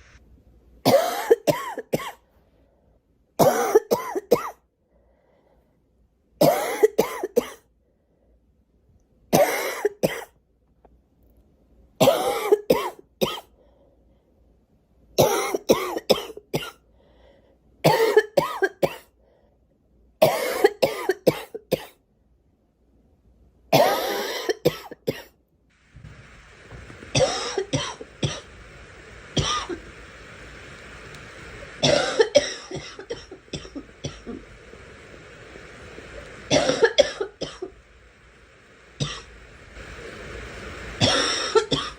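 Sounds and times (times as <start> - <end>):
steady hiss: 0.0 - 2.6, 3.4 - 4.6, 6.4 - 7.6, 15.2 - 19.2, 20.2 - 21.9, 23.7 - 41.9
girl coughing: 0.9 - 2.2, 3.4 - 4.6, 6.4 - 7.6, 9.4 - 10.3, 12.0 - 13.4, 17.9 - 19.0, 23.8 - 25.3.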